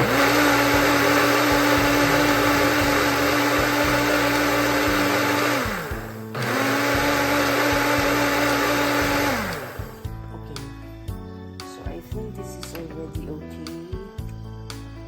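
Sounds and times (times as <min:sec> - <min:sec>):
blender motor whipping: 0:00.0 - 0:10.0.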